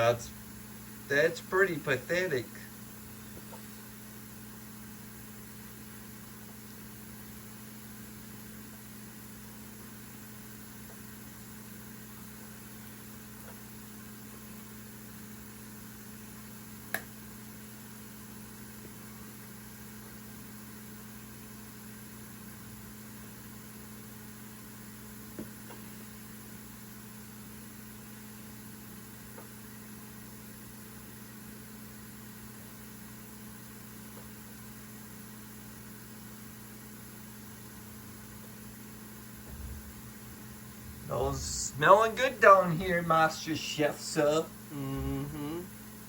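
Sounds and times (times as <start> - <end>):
low machine hum: 0.0 - 17.8, 33.2 - 46.0.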